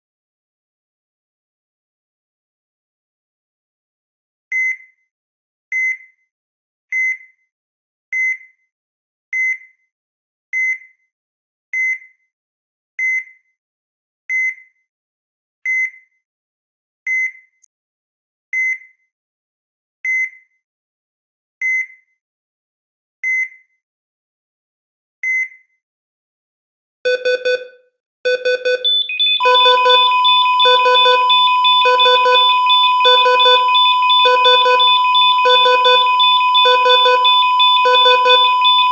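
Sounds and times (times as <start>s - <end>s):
heart monitor beeping: 27.1s - 38.9s
pulsing alarm: 28.3s - 38.9s
steady flatline tone: 28.9s - 38.9s.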